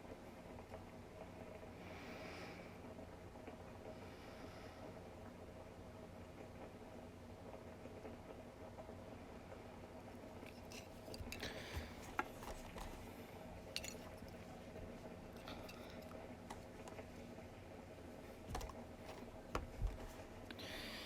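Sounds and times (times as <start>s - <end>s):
faint steady hum: 0.0s - 21.0s
small parts and tools clicking: 10.4s - 14.5s.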